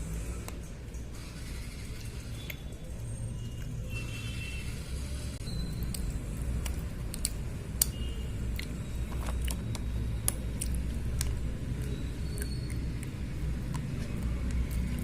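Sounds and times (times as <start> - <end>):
crunching chewing clicks: 5.5 - 15.0.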